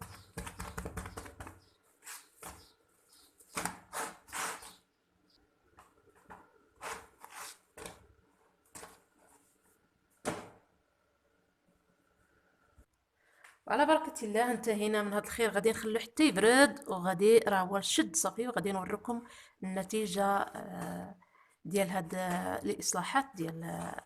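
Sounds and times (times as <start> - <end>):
flatbread scraping on griddle: 2.0 - 2.7, 3.8 - 4.8, 6.8 - 7.9.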